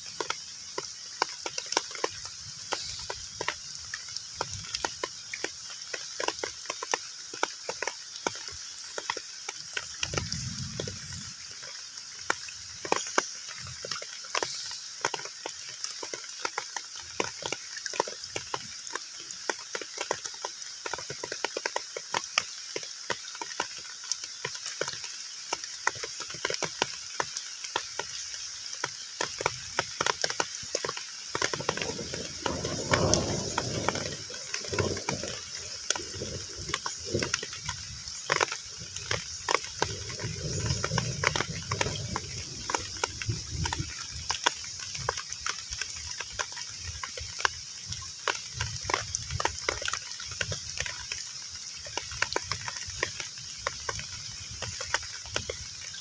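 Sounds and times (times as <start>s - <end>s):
heavy rain on a pond: 0.0s - 56.0s.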